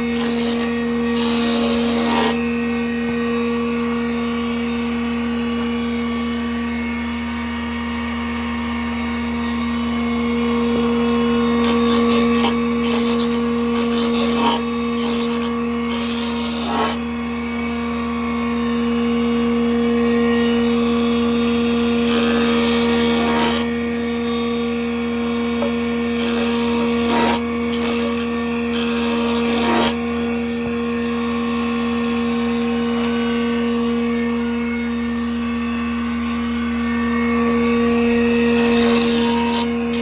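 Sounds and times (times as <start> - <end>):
saw blade cutting wood: 0.0 - 2.5, 10.4 - 17.1, 21.2 - 24.3, 25.4 - 30.8, 38.3 - 40.0
band saw humming: 0.0 - 40.0.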